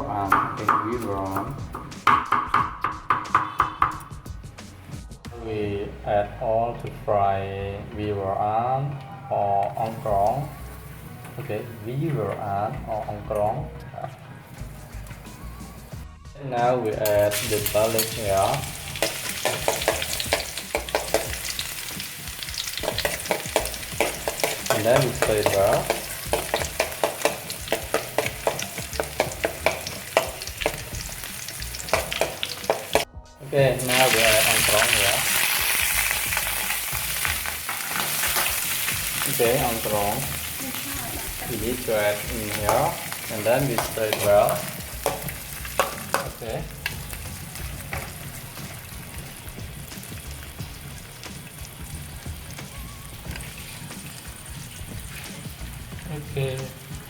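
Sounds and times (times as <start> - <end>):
garlic sizzling in hot oil: 9.7 - 13.1, 17.0 - 57.0
utensil scraping and tapping a pan: 17.0 - 21.6, 22.6 - 33.1, 43.5 - 48.2.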